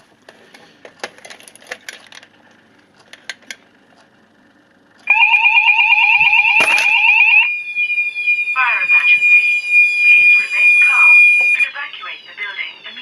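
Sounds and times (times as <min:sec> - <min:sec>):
fast-warbling fire alarm: 0:05.0 - 0:13.0.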